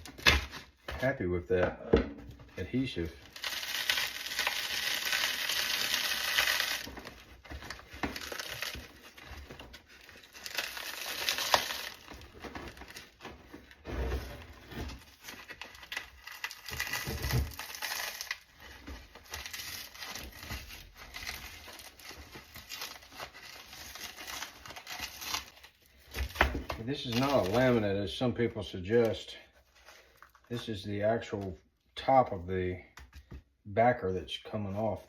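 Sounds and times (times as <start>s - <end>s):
backer tearing and scraping: 2.5s - 28.0s.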